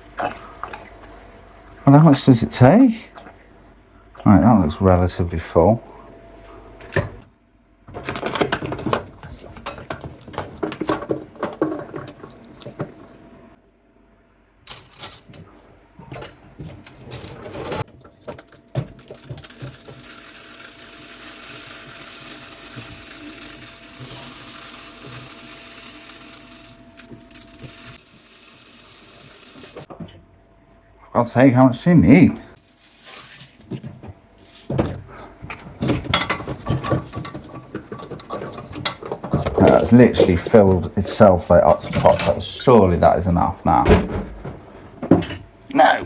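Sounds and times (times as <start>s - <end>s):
plastic and metal clatter: 7.9s - 12.8s, 35.8s - 40.5s
salt pouring hiss: 19.0s - 29.9s, 32.6s - 33.6s.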